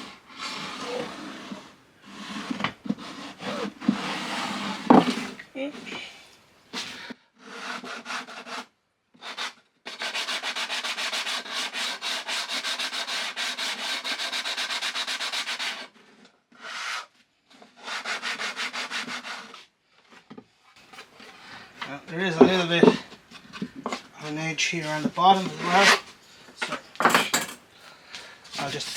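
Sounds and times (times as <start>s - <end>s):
sandpaper rubbing on wood: 0.3s - 5.4s, 7.4s - 16.0s, 17.7s - 19.7s, 24.2s - 26.1s.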